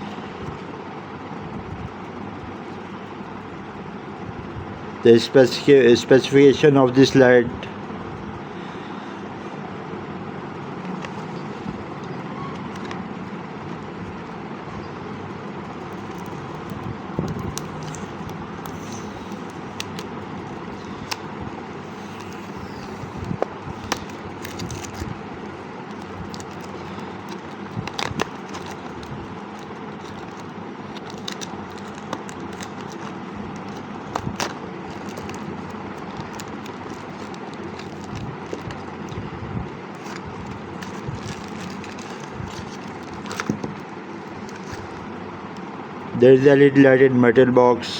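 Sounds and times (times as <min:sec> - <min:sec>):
steady background noise: 0:00.0 - 0:47.9
packaging clicks and taps: 0:10.8 - 0:13.0, 0:15.6 - 0:25.1, 0:25.9 - 0:39.2, 0:40.0 - 0:45.7.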